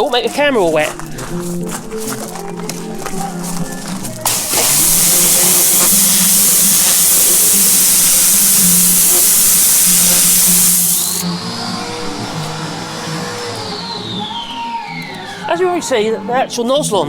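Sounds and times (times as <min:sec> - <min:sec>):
pressure washer spraying water: 0:04.3 - 0:11.3.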